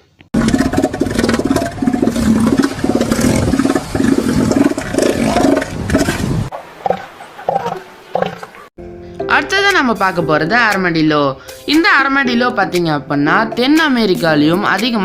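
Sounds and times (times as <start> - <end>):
elephant seal threat call: 0.4 - 8.7.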